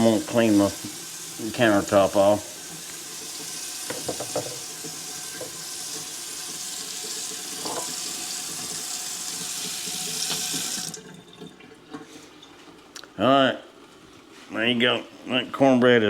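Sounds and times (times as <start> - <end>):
faucet running water into sink: 0.0 - 12.0.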